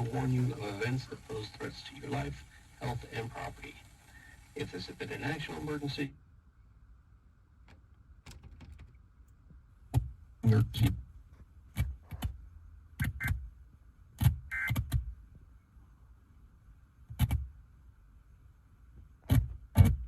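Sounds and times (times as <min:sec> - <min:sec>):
faint steady hum: 0:00.0 - 0:20.0
sharp knocks and clicks: 0:07.6 - 0:10.1.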